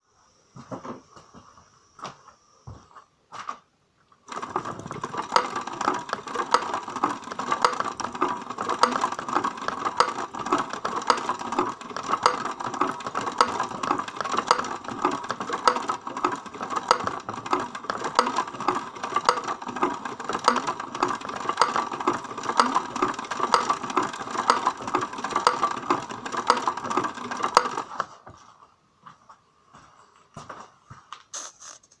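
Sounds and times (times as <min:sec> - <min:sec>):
engine ticking knock: 0:04.3 - 0:27.9.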